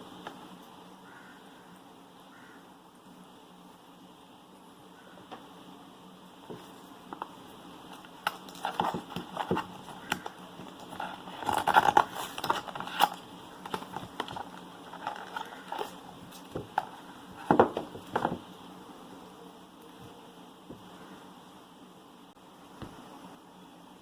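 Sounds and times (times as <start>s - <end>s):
packaging crinkling and rustling: 7.9s - 18.4s.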